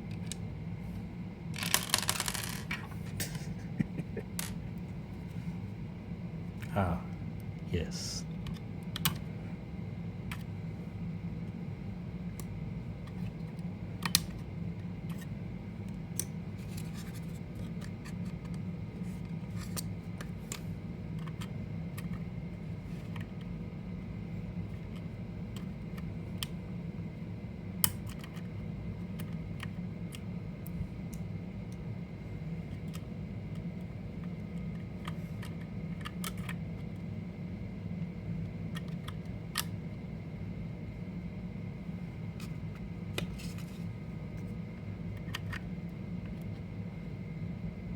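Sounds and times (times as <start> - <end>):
steady low hum: 0.0 - 47.9
clicks and scrapes of handling parts: 43.2 - 44.5.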